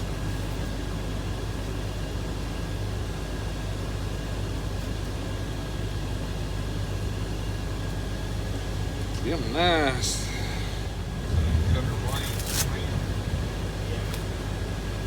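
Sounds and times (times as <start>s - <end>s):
low machine hum: 0.0s - 15.0s
faint steady whine: 4.8s - 15.0s
rush of air noise: 10.2s - 15.0s.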